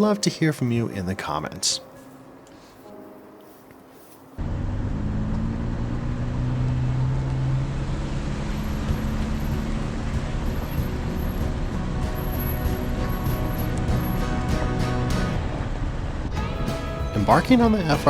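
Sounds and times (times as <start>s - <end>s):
off-road vehicle driving on dirt: 4.4s - 18.0s.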